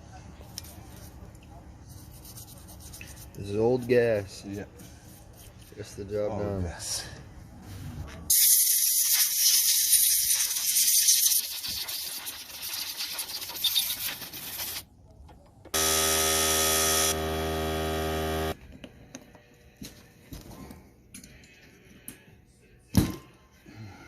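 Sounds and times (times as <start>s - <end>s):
spray hiss: 8.3s - 14.8s
steady buzzing tone: 15.8s - 18.6s.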